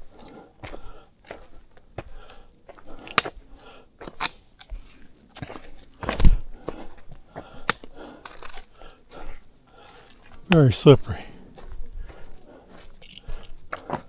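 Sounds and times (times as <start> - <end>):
footsteps on muddy rocky trail: 0.0 - 14.0.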